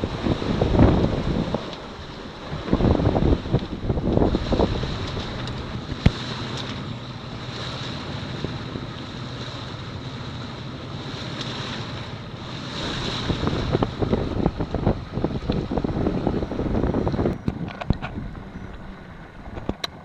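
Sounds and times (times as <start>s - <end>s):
wind buffeting microphone: 0.0s - 9.0s, 11.0s - 20.0s
waves: 0.0s - 20.0s
wind at sea: 0.0s - 20.0s.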